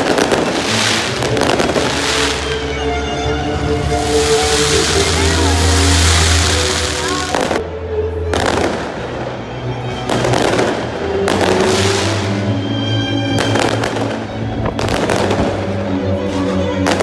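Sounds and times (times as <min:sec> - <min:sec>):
fireworks exploding: 0:00.0 - 0:07.6, 0:10.1 - 0:12.5, 0:13.3 - 0:15.8
music: 0:00.0 - 0:17.0.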